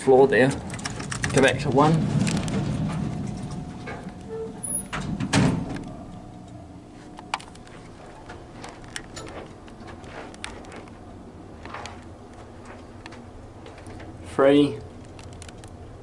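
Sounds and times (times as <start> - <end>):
lift travelling low hum: 0.0 - 16.0
lift doors sliding shut: 0.6 - 6.8.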